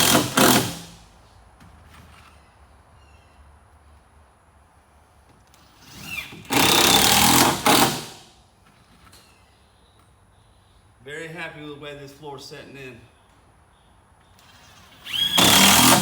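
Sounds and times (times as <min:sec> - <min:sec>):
power drill driving a screw: 0:00.0 - 0:00.9, 0:05.6 - 0:08.2, 0:14.4 - 0:16.0.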